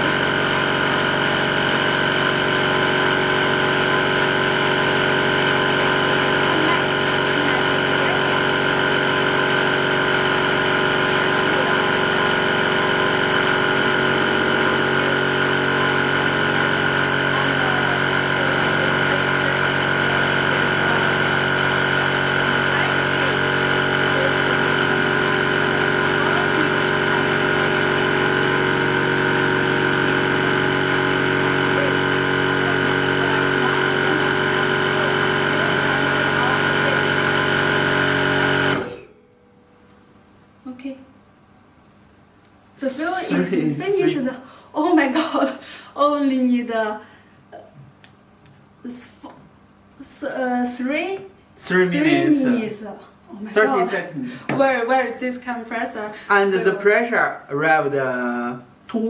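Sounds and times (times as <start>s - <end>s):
air compressor running: 0.0s - 39.3s, 51.6s - 52.8s.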